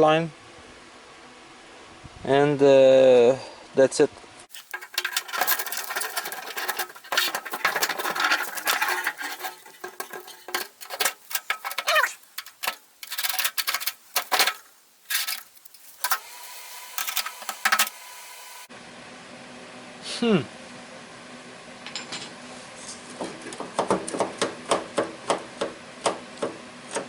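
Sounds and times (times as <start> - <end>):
metal and plastic parts clicking: 4.5 - 16.3, 16.9 - 18.0.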